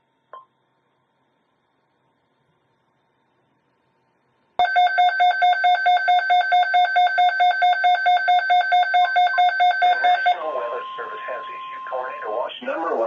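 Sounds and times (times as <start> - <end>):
weather radio pulsing alarm beeps: 4.6 - 13.0.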